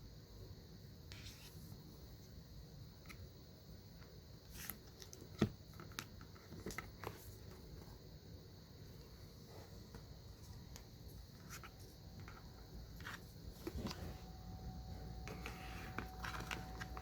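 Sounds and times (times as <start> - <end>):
card box rustle: 15.2 - 17.0.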